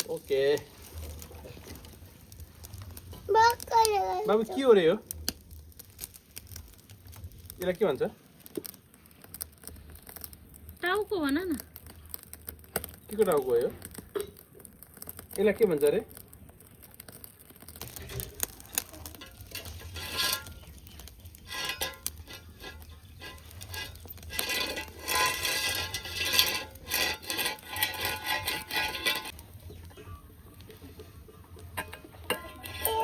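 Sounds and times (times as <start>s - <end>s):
plates and utensils clinking: 29.9s - 33.0s.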